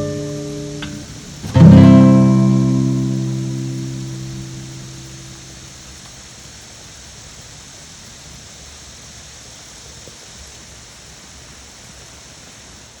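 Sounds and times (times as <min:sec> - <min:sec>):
steady rain falling: 0:00.0 - 0:13.0.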